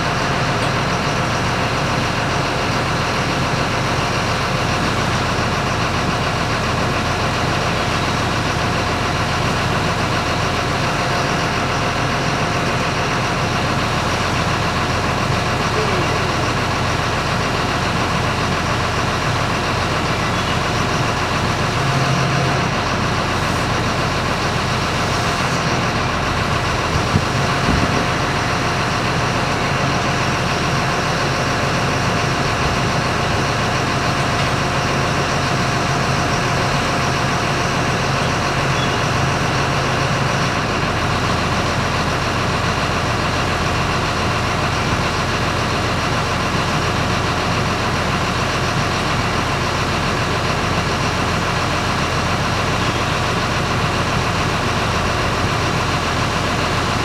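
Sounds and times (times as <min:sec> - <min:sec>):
engine idling: 0:00.0 - 0:57.0.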